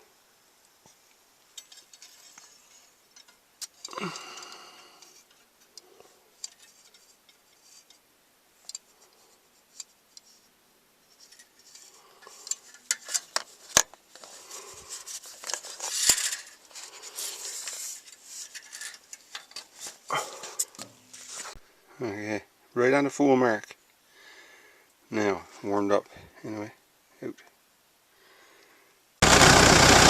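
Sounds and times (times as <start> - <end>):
rustling and scraping: 0.8 - 4.0, 5.0 - 21.6
metal parts clicking and clinking: 1.6 - 5.4, 6.4 - 8.0, 11.2 - 20.9.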